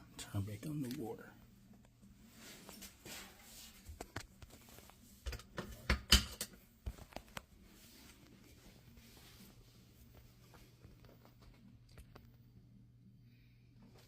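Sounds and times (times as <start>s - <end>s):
faint steady hum: 0.0s - 14.0s.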